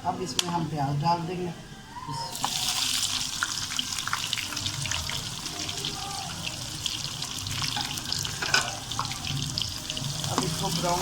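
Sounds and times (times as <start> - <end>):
onions sizzling in hot fat: 2.3 - 11.0.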